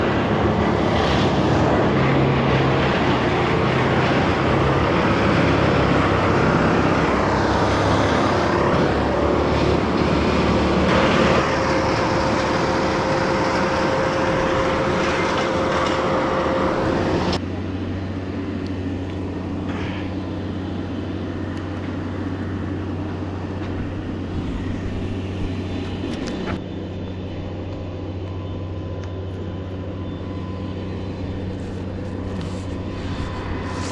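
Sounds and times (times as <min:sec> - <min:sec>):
loud rushing noise: 0:00.0 - 0:17.4, 0:30.2 - 0:33.9
engine running: 0:00.0 - 0:33.9.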